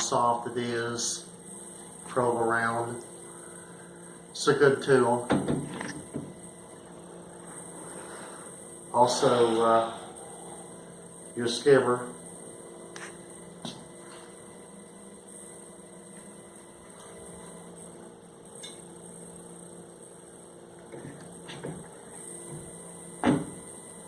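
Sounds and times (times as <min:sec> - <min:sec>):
electrical hum: 0:00.0 - 0:24.0.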